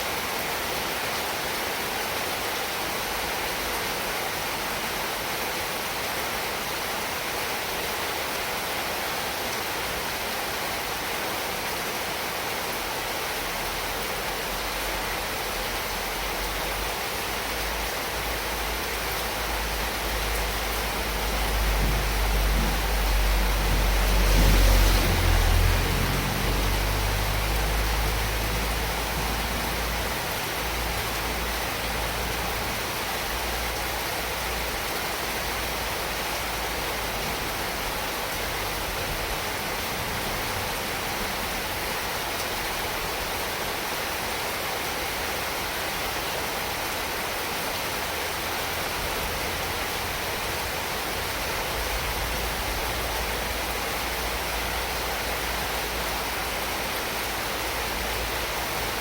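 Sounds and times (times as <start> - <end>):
heavy rain falling: 0.0 - 59.0
low wind rumble: 19.3 - 43.5.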